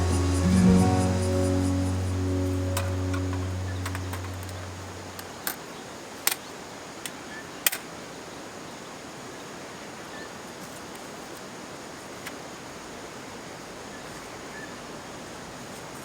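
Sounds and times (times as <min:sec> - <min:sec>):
fire hissing: 0:00.0 - 0:03.6
music: 0:00.0 - 0:04.9.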